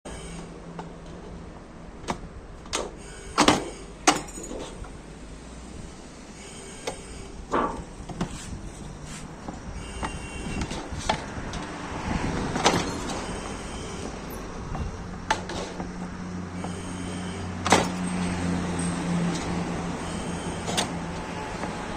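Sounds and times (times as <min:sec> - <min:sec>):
metallic knocks and clanks: 0:07.5 - 0:08.4.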